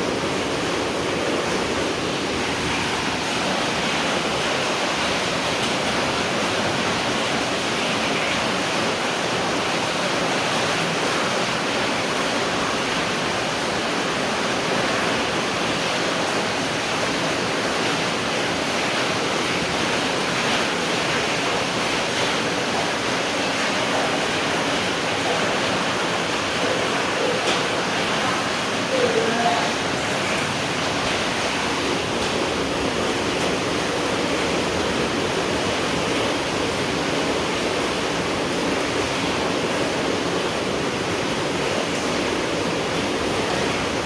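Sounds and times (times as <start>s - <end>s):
heavy rain falling: 0.0s - 44.0s.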